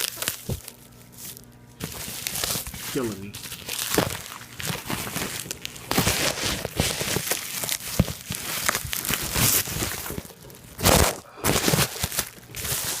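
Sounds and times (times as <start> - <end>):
bubble wrap crinkling: 0.0 - 13.0
bubble wrap ripping: 0.0 - 13.0.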